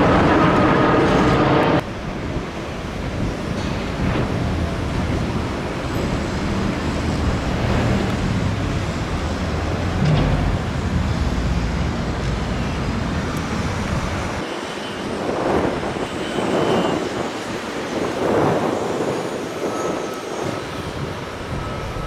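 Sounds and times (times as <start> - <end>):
vehicles passing close: 0.0 - 14.5
traffic rumble: 0.0 - 22.0.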